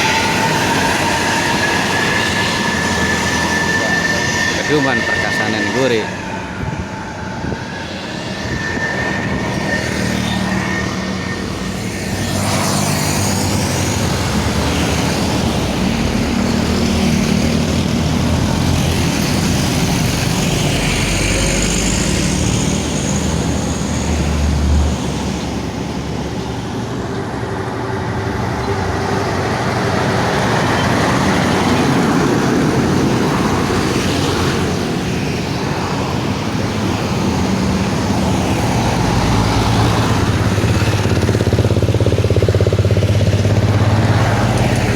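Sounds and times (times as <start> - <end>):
large vehicles passing: 0.0 - 44.9.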